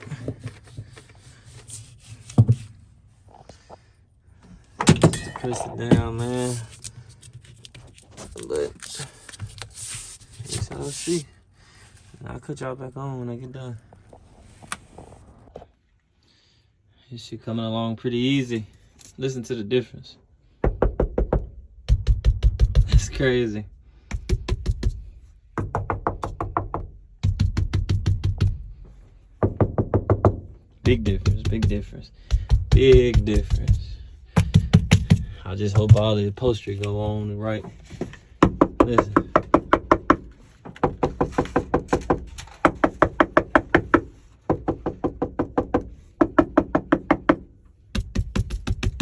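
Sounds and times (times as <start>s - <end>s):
knocks on sheet-metal panels: 20.6s - 23.2s, 24.1s - 28.6s, 29.4s - 36.2s, 38.4s - 49.0s.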